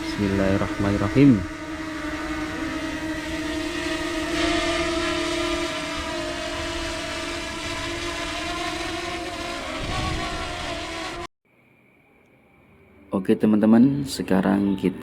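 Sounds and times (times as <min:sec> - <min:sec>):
drone propellers whining: 0:00.0 - 0:11.3
wind rumbling on microphone: 0:08.8 - 0:10.9.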